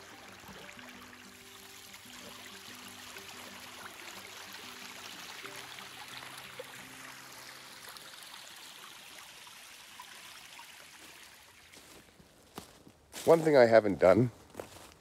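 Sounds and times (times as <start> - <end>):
stream of flowing water: 0.0 - 12.7.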